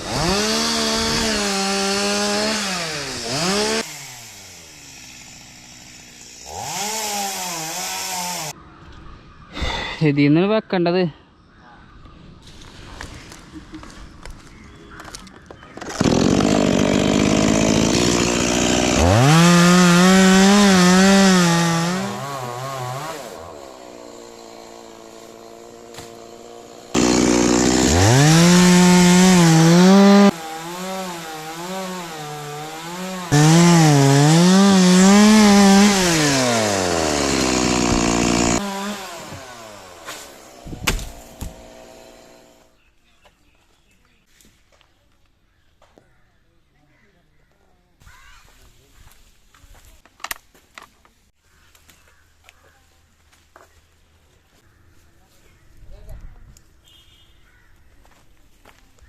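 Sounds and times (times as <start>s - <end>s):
chainsaw cutting wood: 0.0s - 8.5s, 15.8s - 42.7s.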